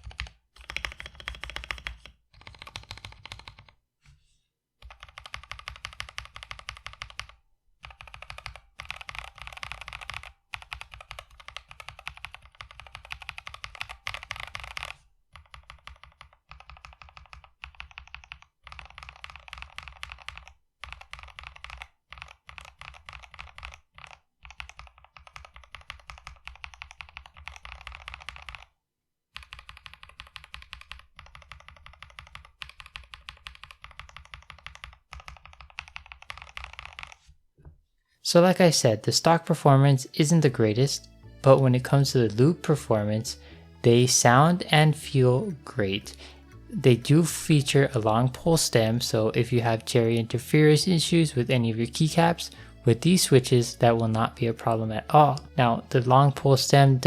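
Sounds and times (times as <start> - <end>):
mechanical keyboard typing: 0.0 - 3.8, 4.8 - 28.7, 29.4 - 37.2.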